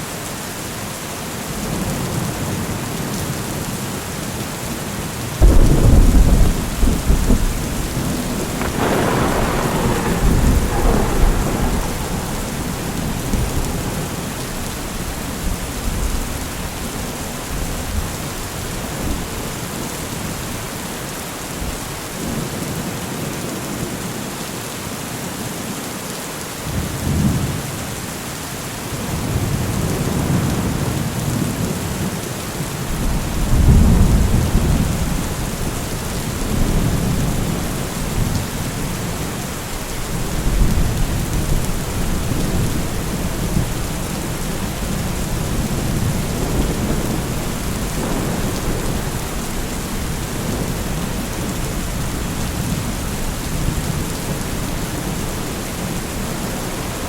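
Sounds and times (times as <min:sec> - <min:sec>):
heavy rain: 0:00.0 - 0:57.0
thunder rolling: 0:05.4 - 0:16.7, 0:32.9 - 0:57.0.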